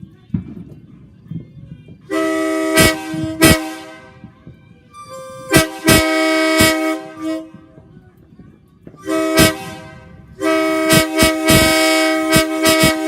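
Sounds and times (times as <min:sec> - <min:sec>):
locomotive air horn blasts: 0:02.1 - 0:07.9, 0:09.0 - 0:13.0.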